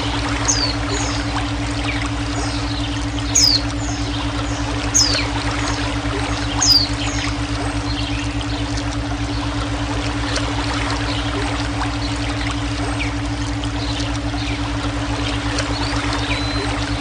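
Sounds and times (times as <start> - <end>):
low droning tone: 0.0 - 17.0
running water: 0.0 - 17.0
faint bird chirps: 0.4 - 1.3, 2.4 - 5.8, 6.5 - 8.2, 15.7 - 16.7.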